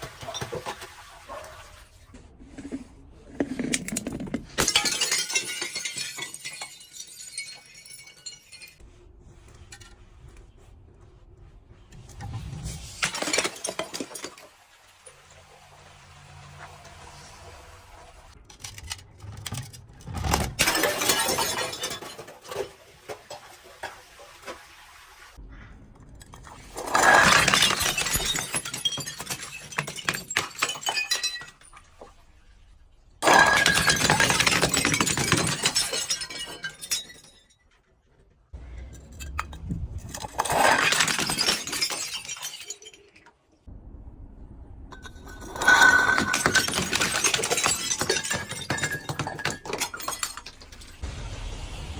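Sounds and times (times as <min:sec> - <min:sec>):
glass breaking and crunching: 0:03.8 - 0:08.8, 0:13.0 - 0:14.5, 0:19.5 - 0:22.8, 0:26.7 - 0:32.1, 0:33.2 - 0:37.8, 0:38.9 - 0:43.5, 0:45.0 - 0:51.0.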